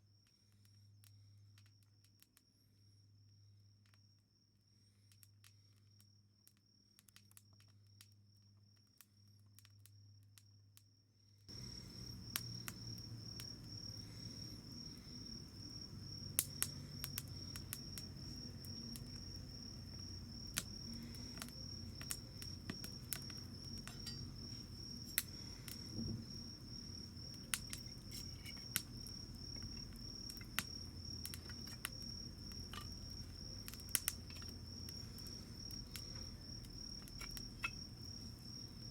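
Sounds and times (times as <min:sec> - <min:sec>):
insects chirring: 0:11.2 - 0:38.9
campfire crackling and popping: 0:11.5 - 0:38.9.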